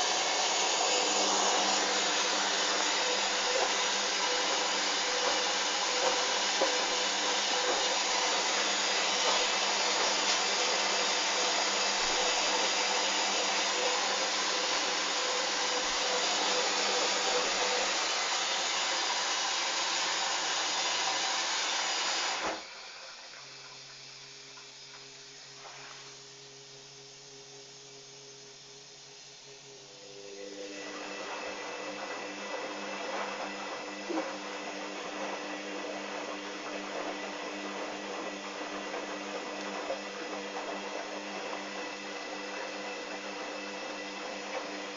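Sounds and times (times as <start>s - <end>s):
water rushing into washing machine: 0.0s - 26.1s, 30.0s - 44.9s
washing machine hum: 0.0s - 44.9s.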